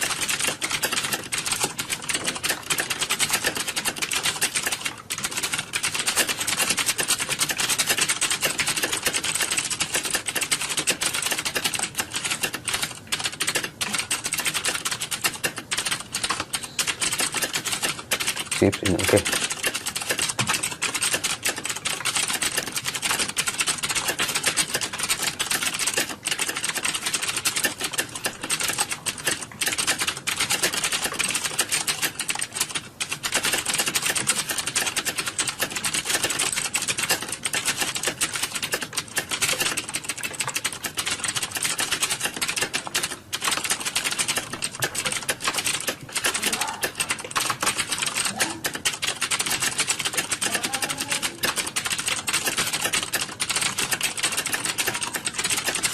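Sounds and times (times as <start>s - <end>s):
rapid keyboard typing: 0.0s - 55.9s.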